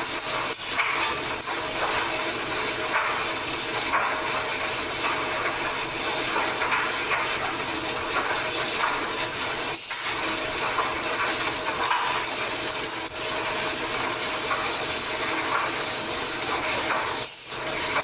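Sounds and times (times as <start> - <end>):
laundry machine running: 0.0 - 18.0.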